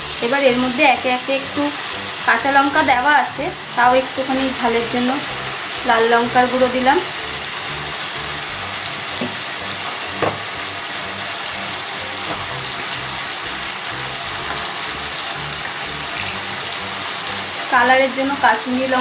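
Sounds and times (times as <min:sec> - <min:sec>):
vegetables sizzling in hot oil: 0:00.0 - 0:19.0
faint knocks: 0:10.2 - 0:10.5.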